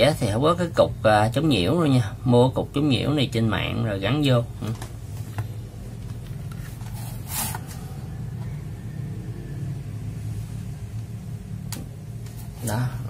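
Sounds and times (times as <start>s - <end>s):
low electrical hum: 0.0s - 13.0s
rustling scrape of handling: 6.5s - 8.0s.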